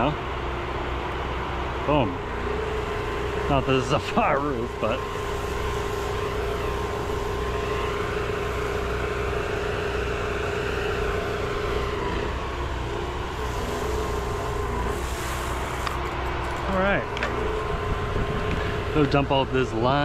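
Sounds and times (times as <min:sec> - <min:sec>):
small petrol engine running: 0:00.0 - 0:20.0
spray gun hiss: 0:02.6 - 0:11.8, 0:13.3 - 0:16.0.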